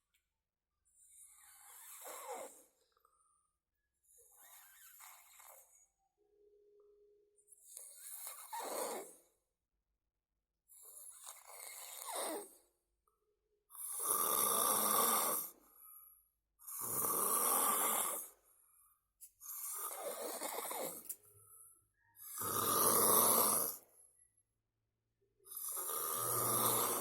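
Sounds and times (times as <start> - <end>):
person snoring: 13.8 - 15.6, 16.7 - 18.3, 19.4 - 21.1, 22.2 - 23.8, 25.5 - 27.0.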